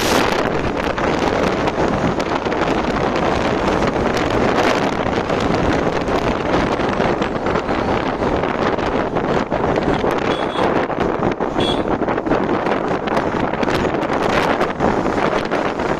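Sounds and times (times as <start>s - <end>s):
wind buffeting microphone: 0.0s - 15.9s
motorcycle engine running: 5.0s - 15.9s.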